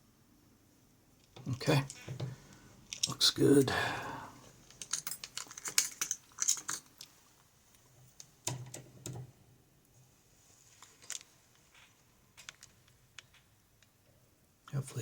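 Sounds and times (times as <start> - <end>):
lock-picking tools clicking: 2.9 - 3.2, 4.6 - 7.1.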